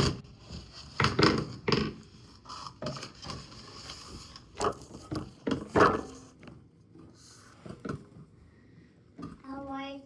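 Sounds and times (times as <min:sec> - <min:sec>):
objects knocking and clattering: 0:00.0 - 0:02.2, 0:04.5 - 0:08.4.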